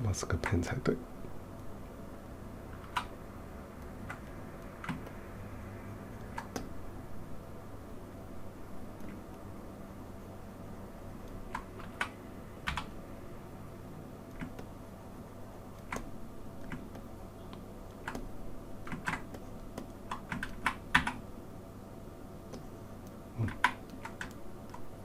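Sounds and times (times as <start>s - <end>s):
keyboard keys clicking: 2.7s - 3.1s, 11.2s - 12.9s, 14.3s - 14.7s, 15.8s - 21.2s, 22.5s - 24.9s.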